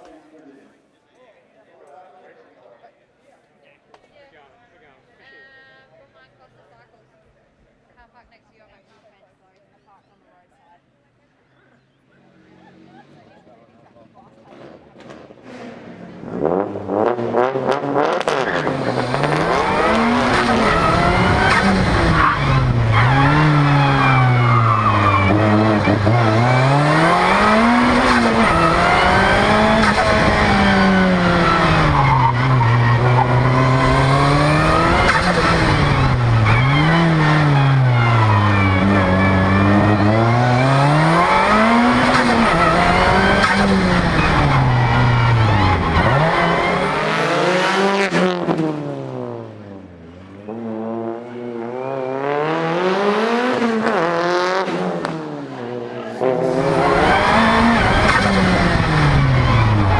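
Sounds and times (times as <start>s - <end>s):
car engine revving: 14.2s - 59.9s.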